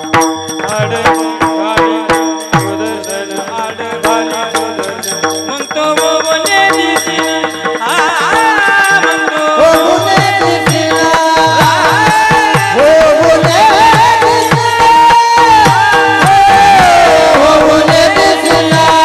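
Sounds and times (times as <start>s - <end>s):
steady held tones: 0.0s - 19.0s
person singing: 0.6s - 19.0s
drum strokes with bending bass: 9.4s - 19.0s.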